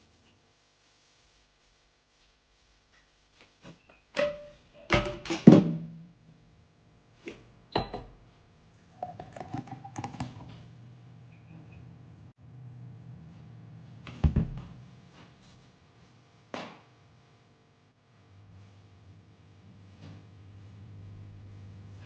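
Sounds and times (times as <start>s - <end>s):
low steady hum: 5.8s - 16.4s, 17.3s - 22.0s.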